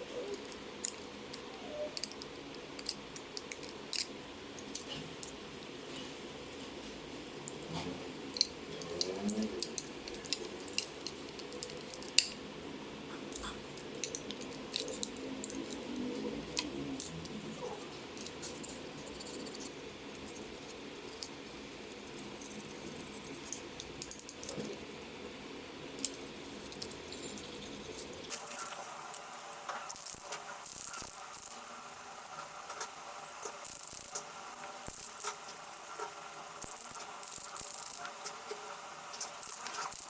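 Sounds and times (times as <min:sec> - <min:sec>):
low steady hum: 0:00.0 - 0:40.0.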